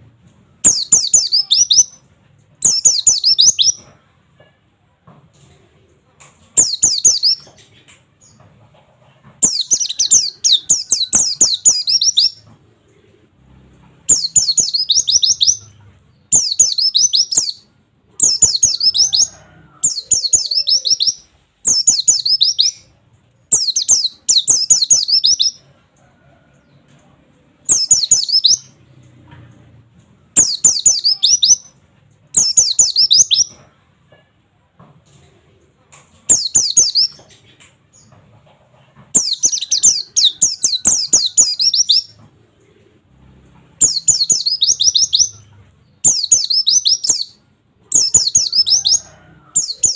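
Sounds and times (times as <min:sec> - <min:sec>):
bird singing rapid sweeping notes: 0:00.6 - 0:02.0, 0:02.6 - 0:03.8, 0:09.4 - 0:12.4, 0:14.1 - 0:15.7, 0:16.3 - 0:17.6, 0:18.2 - 0:22.8, 0:23.5 - 0:25.6, 0:27.7 - 0:28.7, 0:30.4 - 0:31.7, 0:43.8 - 0:47.3.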